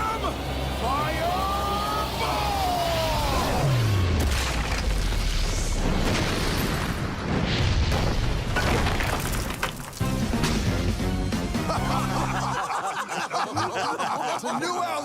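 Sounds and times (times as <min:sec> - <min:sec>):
cartoon booms and blasts: 0:03.8 - 0:09.3.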